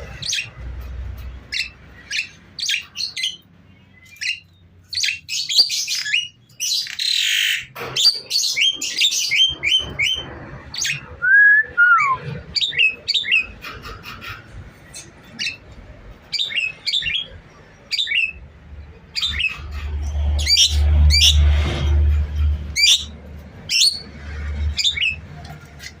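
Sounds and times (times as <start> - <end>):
bird chirping and squawking: 0.0 - 26.0
falling whistle: 11.2 - 12.2.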